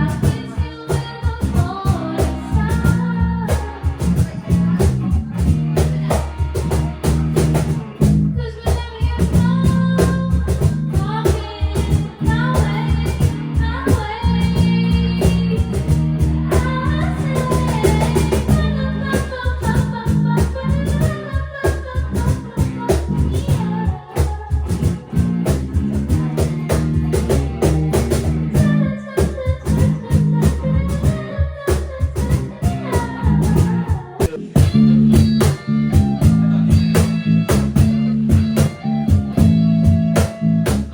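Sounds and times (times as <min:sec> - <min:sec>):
bass: 0:00.0 - 0:40.9
drums: 0:00.0 - 0:40.9
electric guitar: 0:00.0 - 0:40.9
person singing: 0:08.4 - 0:25.0, 0:28.5 - 0:39.4.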